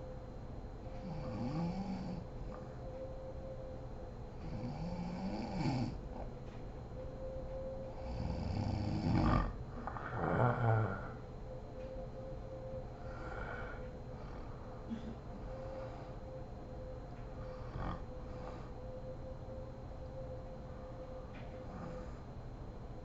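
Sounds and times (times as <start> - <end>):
woman snoring: 1.0 - 2.2, 4.4 - 6.0, 8.0 - 11.2, 17.7 - 18.6.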